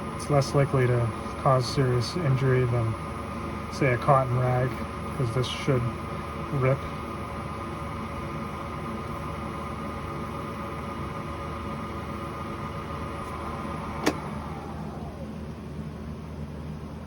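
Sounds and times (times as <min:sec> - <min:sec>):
lathe motor hum: 0:00.0 - 0:17.0
sharp click: 0:14.0 - 0:14.3.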